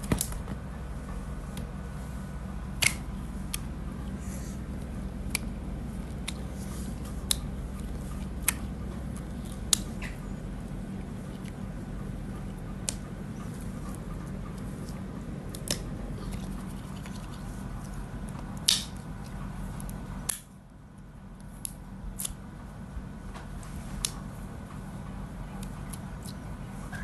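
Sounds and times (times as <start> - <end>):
steady low hum: 0.0 - 27.0
silicone toy clicks and snaps: 2.8 - 3.6, 18.6 - 19.0, 20.3 - 20.5, 21.6 - 22.4.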